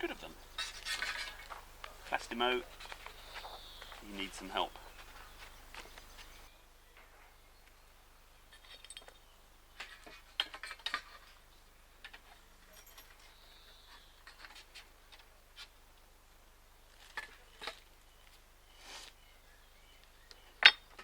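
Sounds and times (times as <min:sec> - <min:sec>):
small metal fittings clinking: 0:12.7 - 0:13.4.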